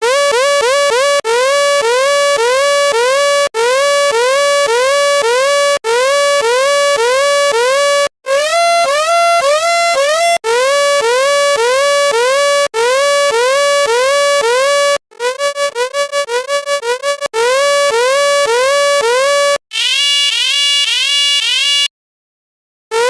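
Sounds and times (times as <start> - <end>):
electronic alarm beeps: 19.7 - 21.9.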